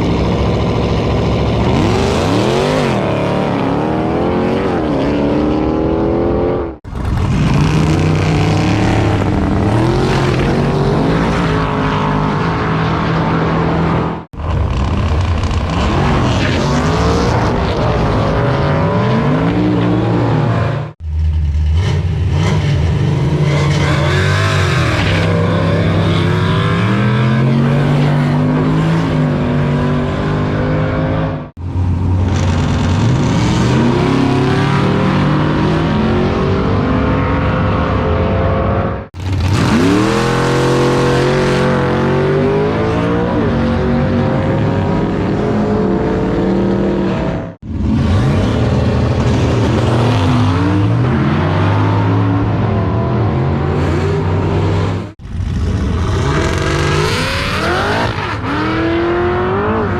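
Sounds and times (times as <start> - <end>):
drag cars accelerating: 0.0 - 59.9.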